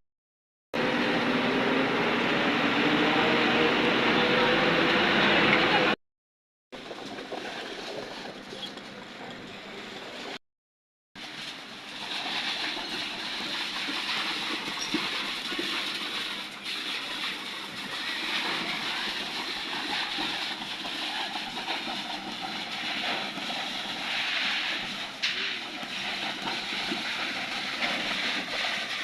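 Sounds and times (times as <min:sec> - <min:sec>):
mixer truck running: 0:00.8 - 0:06.0, 0:06.8 - 0:10.4, 0:11.2 - 0:29.0
concrete pump running: 0:11.2 - 0:29.0.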